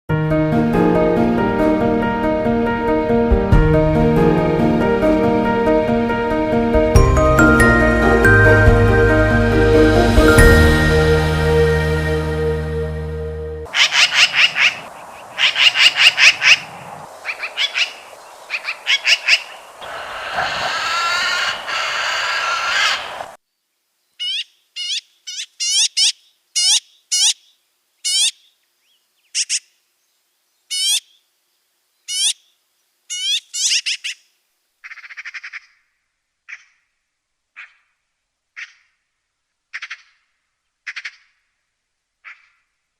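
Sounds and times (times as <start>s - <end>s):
magpie harsh rasping calls: 13.7s - 23.3s, 34.8s - 35.8s
magpie rattling chatter: 13.7s - 23.3s
magpie short high calls: 13.7s - 23.3s.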